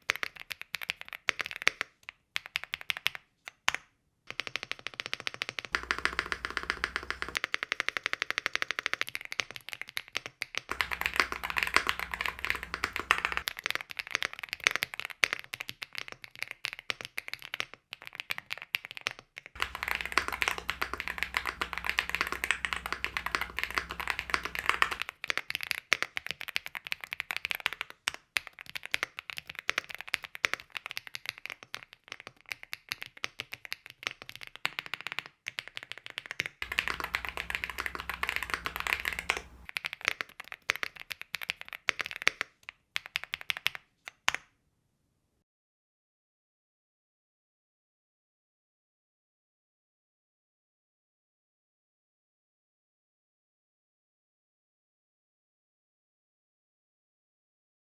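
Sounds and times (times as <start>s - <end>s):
mechanical keyboard typing: 0.0s - 3.7s, 4.3s - 44.3s
faint low hum: 36.6s - 39.7s.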